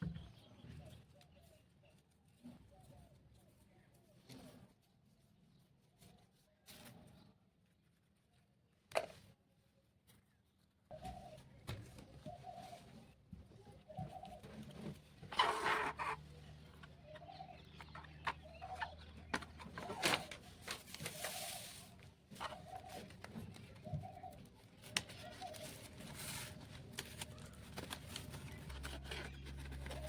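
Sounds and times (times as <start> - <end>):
handling rustle: 10.0 - 30.0.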